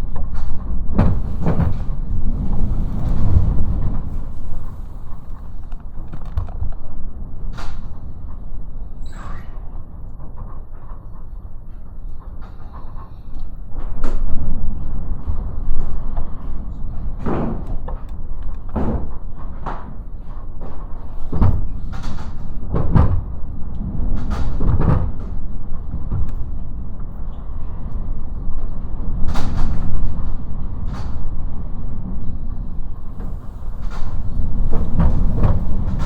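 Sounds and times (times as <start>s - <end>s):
wind buffeting microphone: 0.0s - 8.9s.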